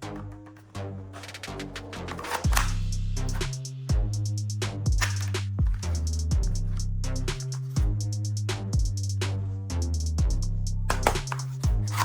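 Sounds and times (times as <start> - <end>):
electronic music with steady beat: 1.2 - 12.0
deep sliding bass-drum hits: 2.5 - 12.0.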